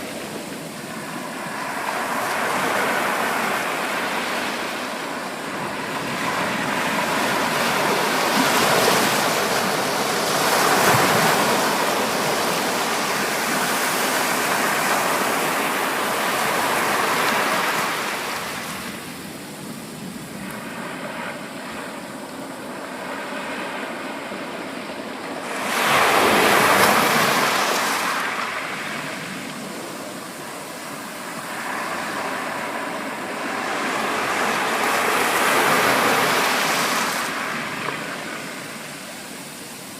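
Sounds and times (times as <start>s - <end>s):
ocean surf breaking on beach: 0.0s - 39.9s.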